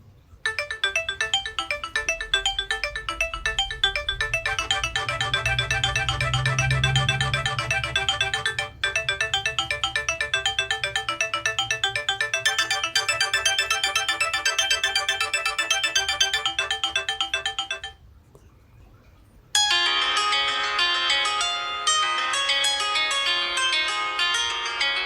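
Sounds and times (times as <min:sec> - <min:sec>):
different ringtone: 0:00.4 - 0:18.0
phone ringtone melody: 0:00.5 - 0:18.0, 0:19.6 - 0:25.0.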